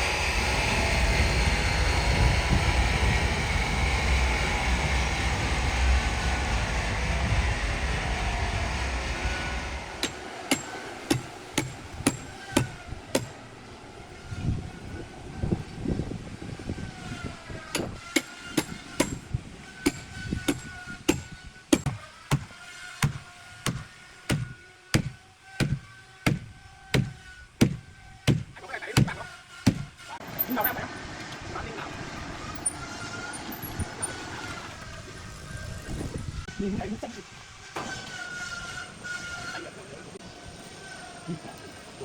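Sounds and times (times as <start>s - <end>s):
hammer blows: 9.4s - 13.6s, 17.0s - 30.7s
dull low thuds: 17.7s - 30.1s.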